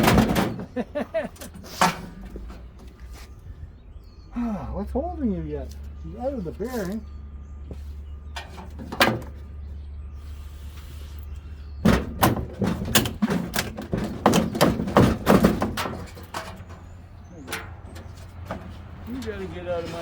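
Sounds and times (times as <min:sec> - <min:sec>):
washer drum clunks and knocks: 0:00.0 - 0:00.7, 0:11.8 - 0:16.7.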